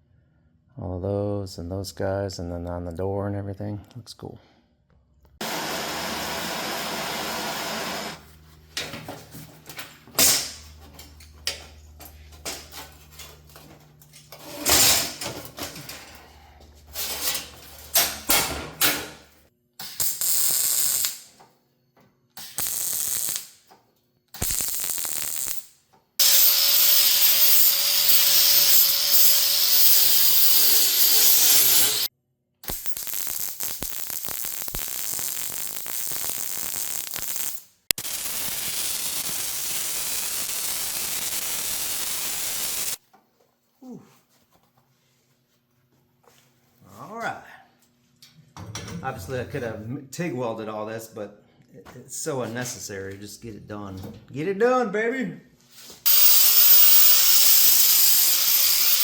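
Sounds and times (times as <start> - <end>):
power tools cutting sheet metal: 5.4 - 8.2, 26.2 - 32.1, 38.0 - 43.0, 56.1 - 59.0
high-speed tool whine: 26.2 - 32.1, 56.1 - 59.0.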